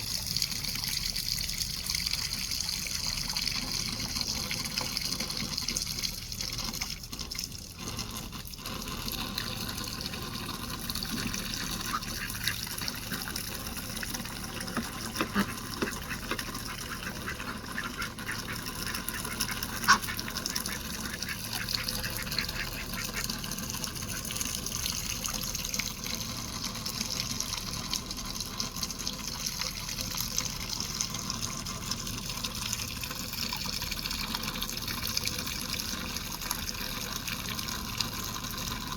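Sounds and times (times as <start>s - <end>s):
gushing water: 0.0s - 38.9s.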